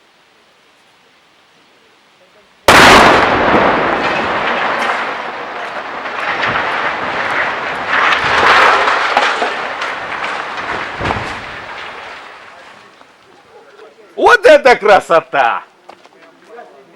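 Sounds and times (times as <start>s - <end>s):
loud explosion blast: 2.7s - 12.6s
sharp crackles: 2.7s - 15.2s
rumble: 2.8s - 12.8s.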